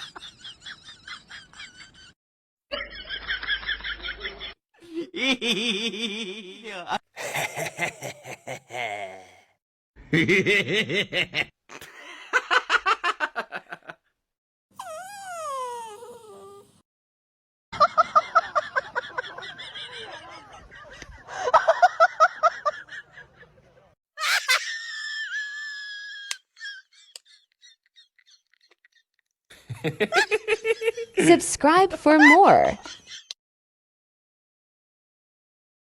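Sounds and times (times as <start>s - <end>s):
people laughing: 0.0s - 2.1s, 2.7s - 9.3s, 10.1s - 14.0s, 17.8s - 31.4s.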